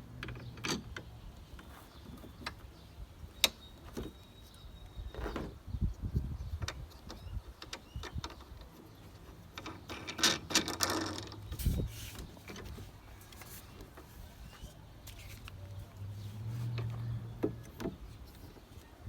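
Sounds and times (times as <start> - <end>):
parts clicking and rattling: 6.6 - 14.1.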